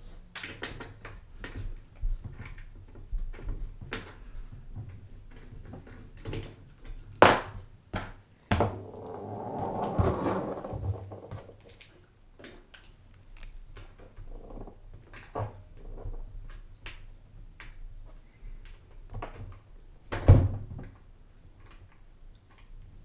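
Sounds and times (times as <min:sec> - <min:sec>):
rustling: 0:08.6 - 0:12.0.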